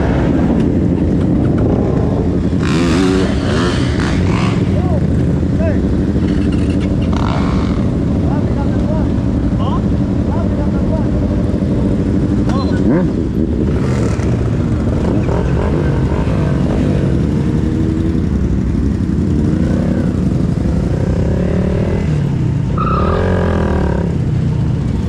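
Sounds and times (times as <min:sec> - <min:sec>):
continuous rushing noise: 0:00.0 - 0:25.0
motorcycle engines revving: 0:00.0 - 0:25.0.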